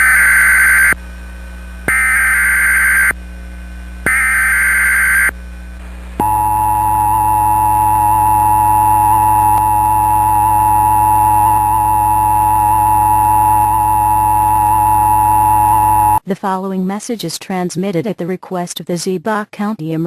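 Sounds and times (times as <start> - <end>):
loud steady alert tone: 1.9 - 3.2, 4.1 - 5.3, 6.2 - 16.2
screeching digital data tones: 1.9 - 3.2, 4.1 - 5.3, 6.2 - 16.2.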